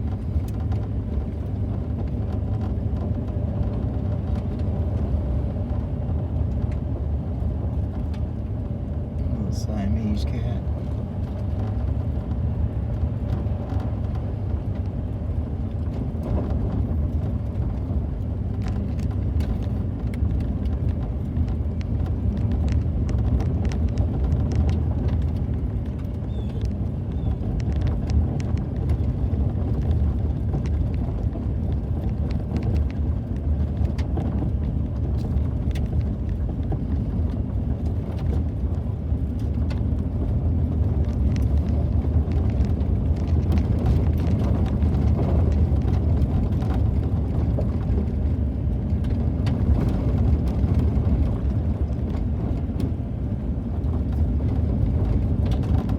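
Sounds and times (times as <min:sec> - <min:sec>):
car road and engine noise: 0:00.0 - 0:55.9
small clicks and ticks: 0:15.6 - 0:53.0.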